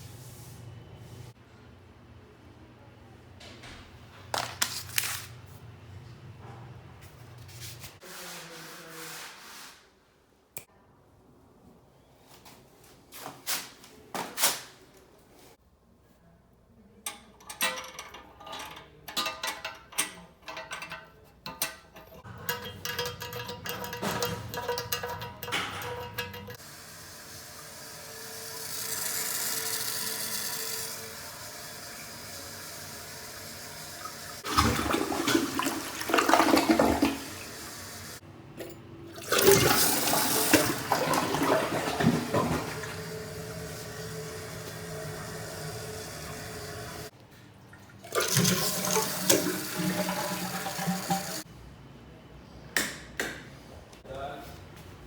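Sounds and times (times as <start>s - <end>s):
toilet flushing: 21.6s - 47.1s, 47.8s - 51.5s.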